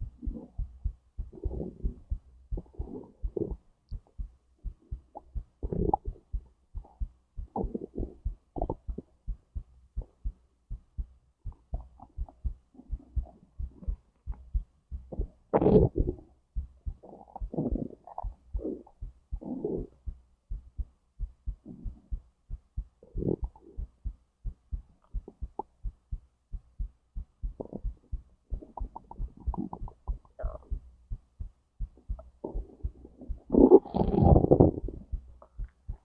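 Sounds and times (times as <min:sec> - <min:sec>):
heartbeat: 0:00.0 - 0:36.0
stomach gurgling: 0:01.3 - 0:03.6, 0:05.0 - 0:07.0, 0:07.6 - 0:09.0, 0:15.1 - 0:16.3, 0:16.9 - 0:20.0, 0:23.0 - 0:23.9, 0:27.6 - 0:30.8, 0:32.1 - 0:36.0.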